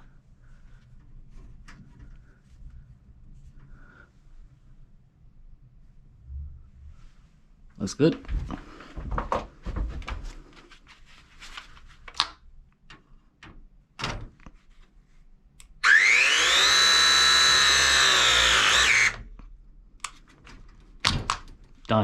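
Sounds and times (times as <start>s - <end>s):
press tool motor whine: 15.8s - 19.2s.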